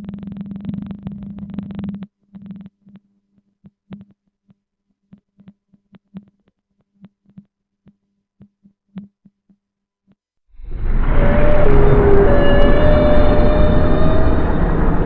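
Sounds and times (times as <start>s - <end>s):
faint clicks with low tone: 0.0s - 10.2s
faint steady hum: 0.0s - 10.8s.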